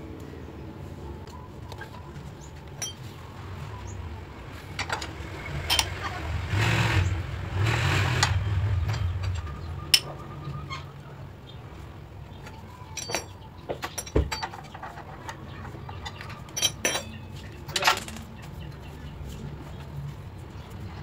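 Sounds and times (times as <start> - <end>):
wrench clinking on metal bolts: 2.8 - 3.1, 5.6 - 6.0, 12.8 - 15.4, 16.0 - 18.2.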